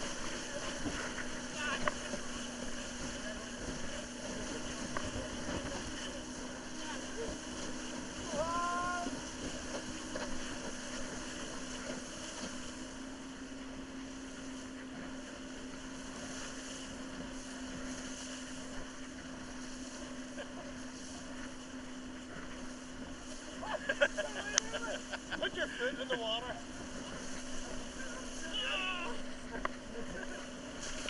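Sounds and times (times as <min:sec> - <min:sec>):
motorboat engine drone: 0:00.0 - 0:31.0
rush of wind and water: 0:00.0 - 0:31.0.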